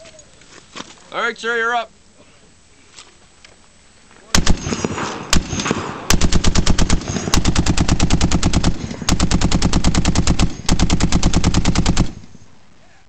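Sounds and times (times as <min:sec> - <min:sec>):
heavy machine gun firing: 0:04.4 - 0:12.5.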